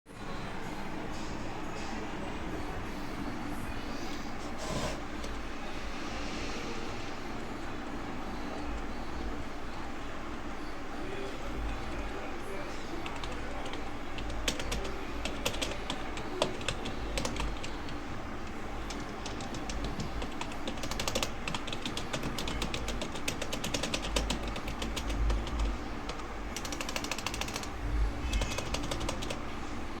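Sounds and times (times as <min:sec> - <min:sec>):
steady low hum: 0:00.1 - 0:30.0
rapid keyboard key clicks: 0:13.0 - 0:17.8, 0:18.8 - 0:29.4.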